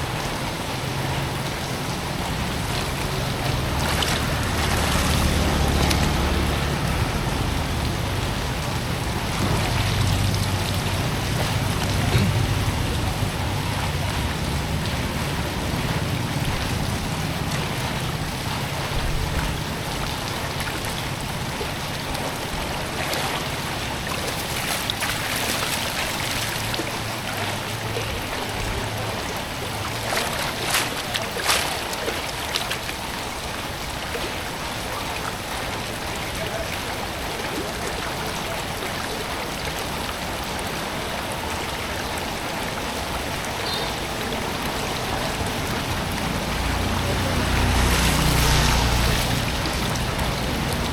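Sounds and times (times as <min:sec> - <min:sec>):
water rushing: 0:00.0 - 0:50.9
sharp knocks or splashes: 0:24.0 - 0:27.2, 0:43.6 - 0:50.9.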